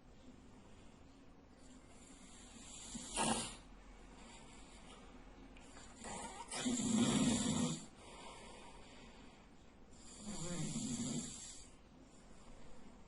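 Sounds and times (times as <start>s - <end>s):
man snoring loudly: 6.3s - 7.9s, 10.0s - 11.6s.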